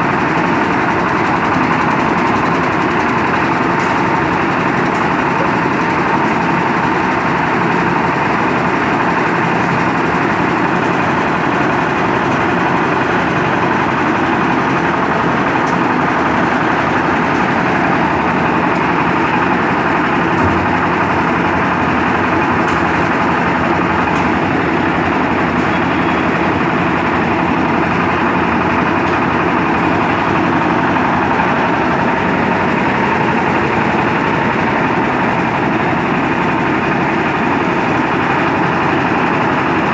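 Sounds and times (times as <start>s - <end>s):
concrete mixer engine running: 0.0s - 39.9s.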